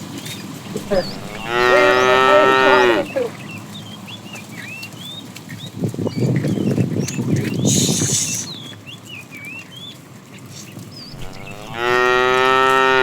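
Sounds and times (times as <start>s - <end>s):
low rustling among herd: 0.0s - 13.0s
small birds chirping: 0.0s - 13.0s
cow mooing: 0.8s - 3.4s, 11.1s - 13.0s.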